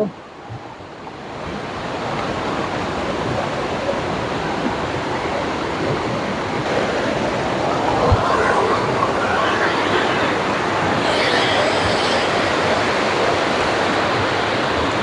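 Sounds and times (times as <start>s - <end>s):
waterfall rushing: 3.6s - 15.0s.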